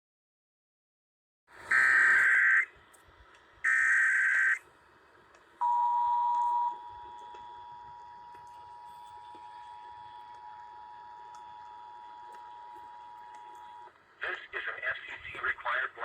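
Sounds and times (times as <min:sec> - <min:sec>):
screechy digital data bursts: 0:01.7 - 0:02.7, 0:03.7 - 0:04.6.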